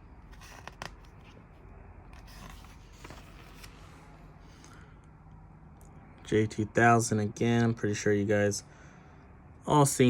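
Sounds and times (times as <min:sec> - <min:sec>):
paper rustling: 0:02.1 - 0:04.1.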